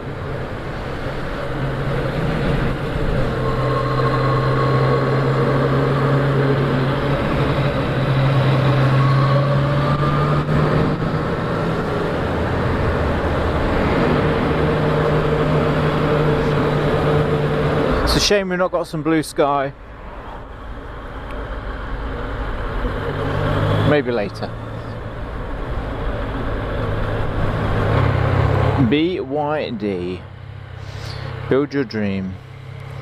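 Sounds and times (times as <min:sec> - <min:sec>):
wind rush: 0:00.0 - 0:08.9, 0:09.6 - 0:18.1.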